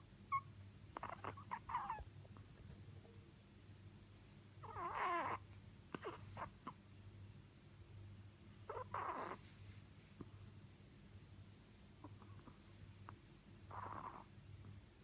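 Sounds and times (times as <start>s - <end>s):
dog whimpering in sleep: 0.3s - 2.1s, 4.6s - 6.8s, 8.6s - 9.5s, 13.7s - 14.3s.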